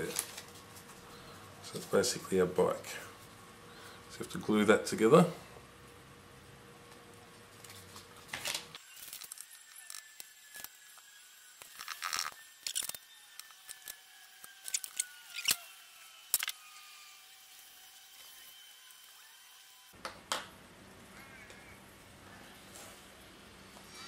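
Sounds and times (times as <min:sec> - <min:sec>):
card paper rustling and crinkling: 0:00.0 - 0:01.1, 0:07.5 - 0:09.6.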